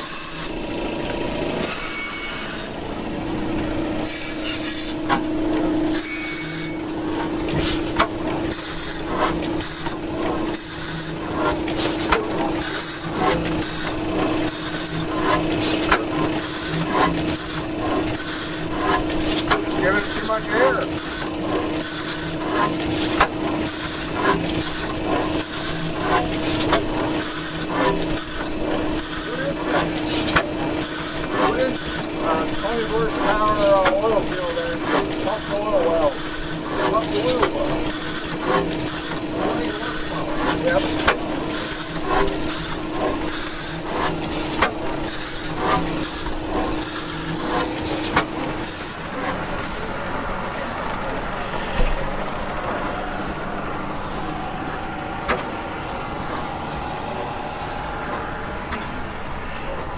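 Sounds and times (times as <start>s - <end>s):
machinery humming: 0.0s - 59.9s
high squeak: 1.6s - 2.8s, 4.0s - 5.0s, 6.0s - 6.9s, 30.8s - 32.0s, 45.1s - 47.4s, 48.6s - 51.0s, 52.2s - 54.7s, 55.7s - 58.6s, 59.2s - 59.8s.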